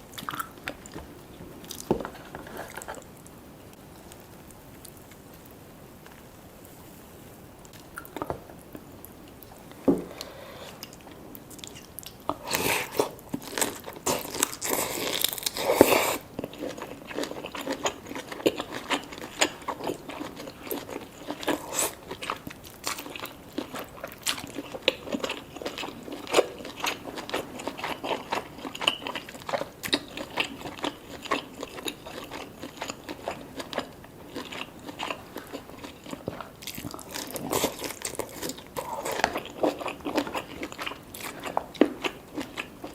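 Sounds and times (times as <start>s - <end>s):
crunchy chewing: 10.1s - 42.9s.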